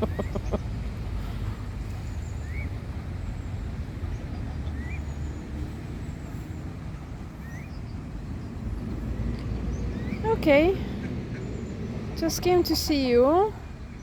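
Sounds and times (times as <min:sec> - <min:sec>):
low outdoor rumble: 0:00.0 - 0:14.0
bird rising chirp: 0:03.5 - 0:12.0.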